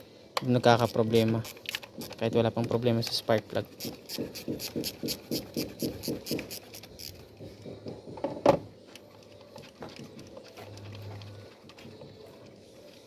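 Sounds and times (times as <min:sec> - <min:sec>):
ratchet wrench clicking: 0:00.6 - 0:02.2, 0:03.7 - 0:07.2.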